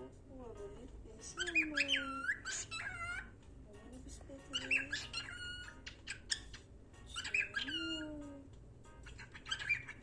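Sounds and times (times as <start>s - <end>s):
cockatiel chirping and chattering: 1.4s - 3.4s, 4.5s - 8.2s, 9.0s - 10.0s.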